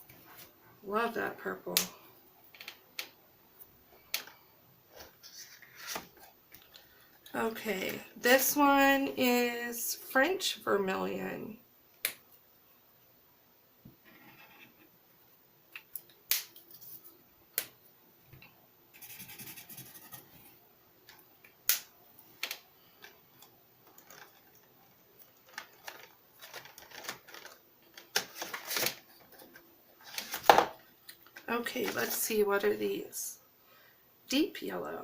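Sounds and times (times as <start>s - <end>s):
scratchy rubbing on paper: 19.0s - 20.3s.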